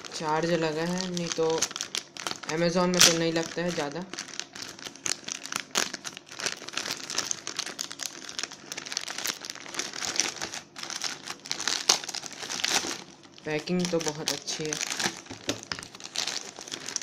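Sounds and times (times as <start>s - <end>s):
plastic packaging crinkling: 0.0s - 17.0s.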